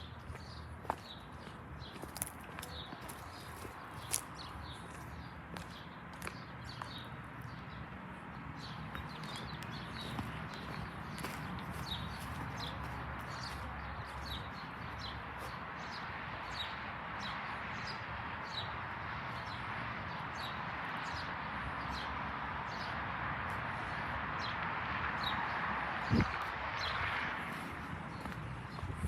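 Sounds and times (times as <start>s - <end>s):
small birds chirping: 0.0s - 23.0s.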